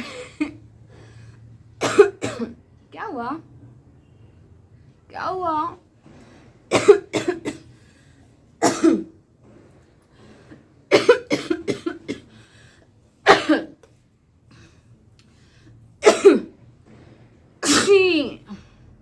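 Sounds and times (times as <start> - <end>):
woman coughing: 0.0 - 0.6, 1.8 - 2.6, 6.7 - 7.7, 8.6 - 9.1, 10.9 - 12.3, 13.3 - 13.8, 16.0 - 16.5, 17.6 - 18.7.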